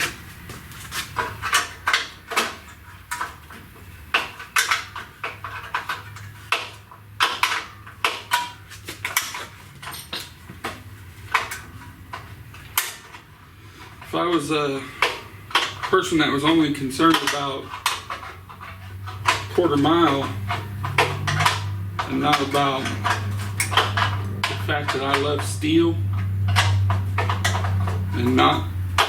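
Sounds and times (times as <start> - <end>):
hand tools clanking on metal: 0.0 - 29.0
steady low hum: 0.0 - 29.0.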